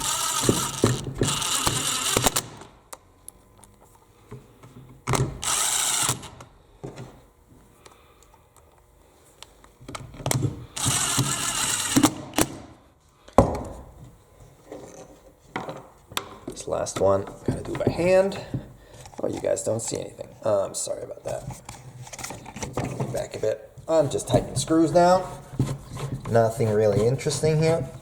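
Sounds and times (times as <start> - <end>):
drill driver running screws: 0.0 - 2.7, 5.2 - 6.4, 10.8 - 12.6.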